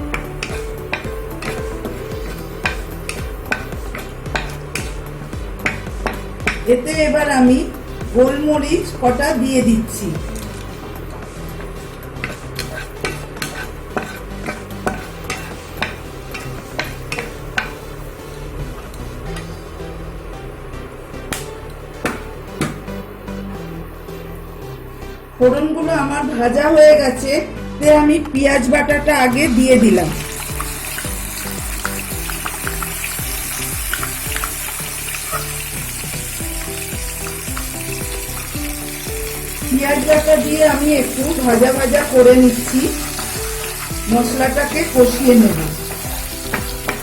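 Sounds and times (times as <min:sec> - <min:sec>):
spices sizzling in oil: 0:00.0 - 0:25.2, 0:29.2 - 0:47.0
utensil scraping and tapping pan: 0:00.1 - 0:04.9, 0:05.6 - 0:06.7, 0:11.5 - 0:17.9, 0:40.0 - 0:47.0.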